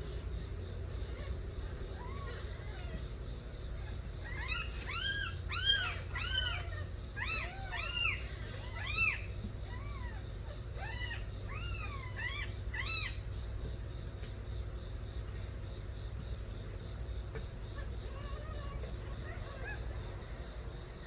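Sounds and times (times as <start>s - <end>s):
kittens meowing loudly: 1.1s - 3.1s, 3.8s - 13.2s, 17.7s - 20.0s.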